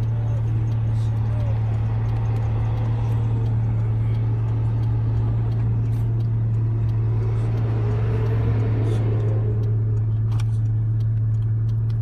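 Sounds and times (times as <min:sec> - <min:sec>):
low engine hum: 0:00.0 - 0:12.0
road noise: 0:00.0 - 0:12.0.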